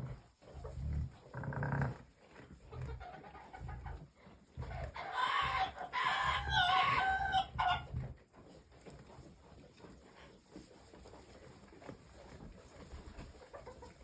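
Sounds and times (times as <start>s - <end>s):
rooster crowing: 5.2s - 7.8s.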